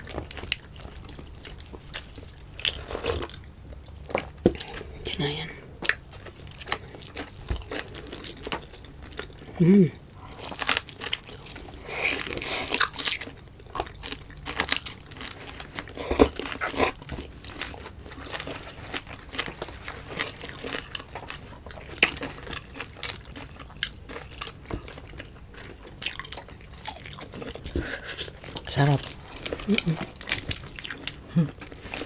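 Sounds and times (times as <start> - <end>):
person biting and chewing food: 10.4 - 25.2.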